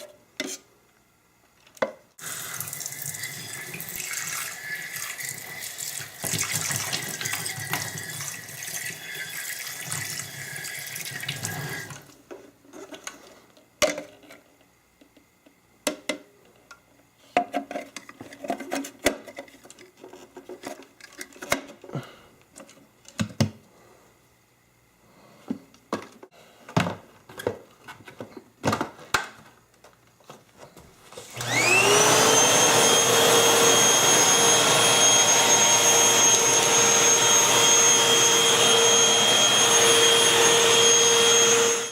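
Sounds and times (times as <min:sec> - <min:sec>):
tap water running: 0:02.2 - 0:12.1
vacuum cleaner motor whining: 0:31.1 - 0:41.9.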